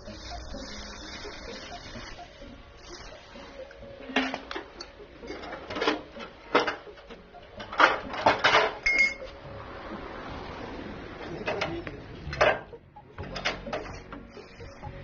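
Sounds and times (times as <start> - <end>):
metal clanking and knocking: 4.1 - 9.3, 11.4 - 14.3.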